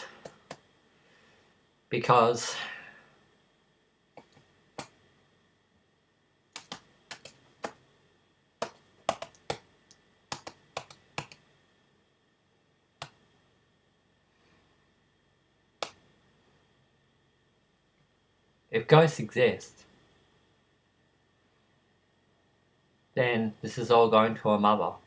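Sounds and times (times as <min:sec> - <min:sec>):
sharp irregular clicks: 0:06.6 - 0:07.8, 0:08.6 - 0:11.4.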